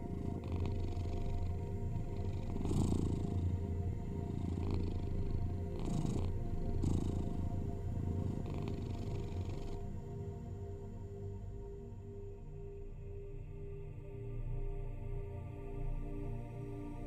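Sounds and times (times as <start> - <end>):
cat purring: 0.0 - 10.0.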